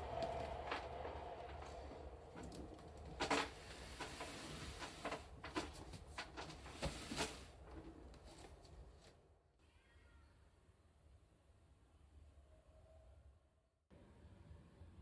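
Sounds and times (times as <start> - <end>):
hard objects clicking and knocking: 0.2 - 7.0.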